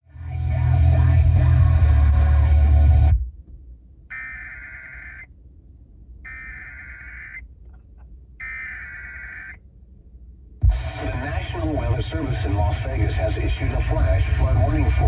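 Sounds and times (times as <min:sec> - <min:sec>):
warbling digital data tones: 0:04.1 - 0:05.3, 0:06.3 - 0:07.4, 0:08.4 - 0:09.6.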